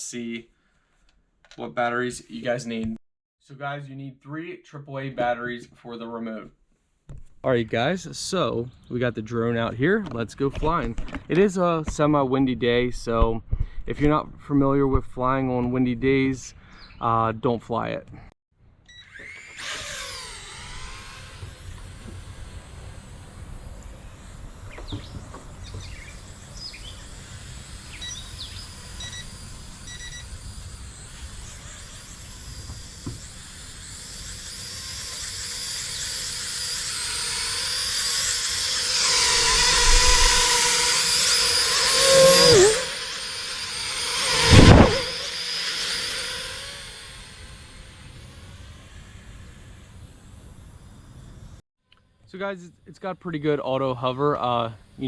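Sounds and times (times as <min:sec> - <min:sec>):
toy drone motors whining: 0:18.8 - 0:51.6
short electronic beeps: 0:29.9 - 0:30.3.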